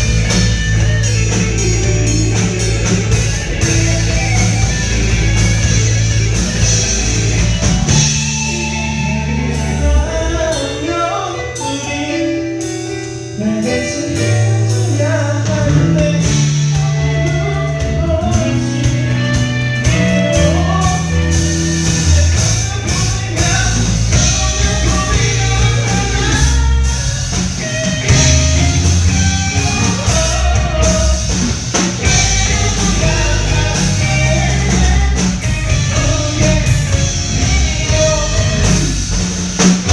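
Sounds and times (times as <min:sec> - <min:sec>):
live rock band playing: 0:00.0 - 0:39.9
person singing: 0:00.0 - 0:39.9.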